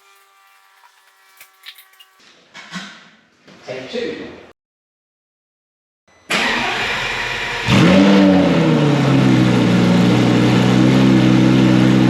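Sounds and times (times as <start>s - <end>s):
car engine starting and idling: 6.3s - 12.0s.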